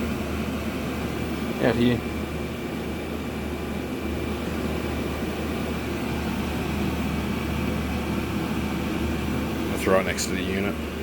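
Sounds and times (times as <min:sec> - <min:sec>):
diesel air heater running: 0:00.0 - 0:11.0.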